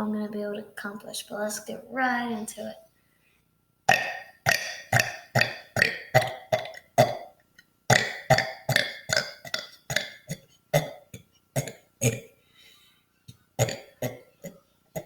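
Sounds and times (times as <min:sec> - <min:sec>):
person burping: 0:03.9 - 0:12.3, 0:13.6 - 0:15.0.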